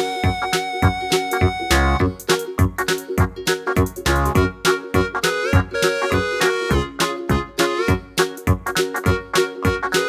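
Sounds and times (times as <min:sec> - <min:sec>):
held keyboard tone: 0:00.0 - 0:02.4
music with steady beat: 0:00.0 - 0:10.0.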